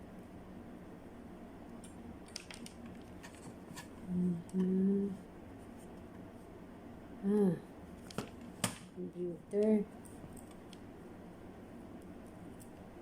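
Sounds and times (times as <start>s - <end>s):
person humming: 4.0s - 5.2s, 7.2s - 7.7s.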